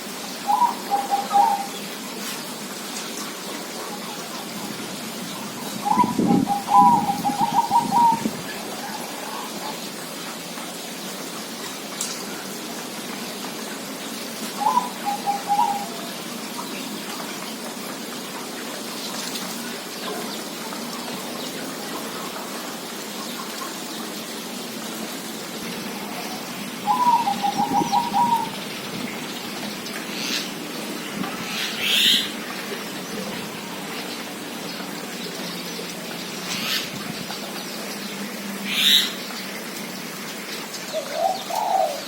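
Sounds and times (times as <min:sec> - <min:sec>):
steady hiss: 0:00.0 - 0:42.0
dove cooing: 0:00.4 - 0:01.8, 0:05.8 - 0:09.8, 0:14.6 - 0:16.1, 0:25.9 - 0:28.6, 0:40.9 - 0:42.0.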